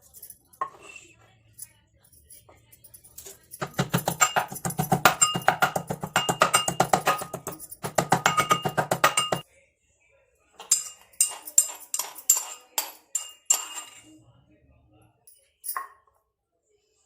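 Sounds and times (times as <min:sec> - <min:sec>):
music with fast percussive beat: 0:03.6 - 0:09.4.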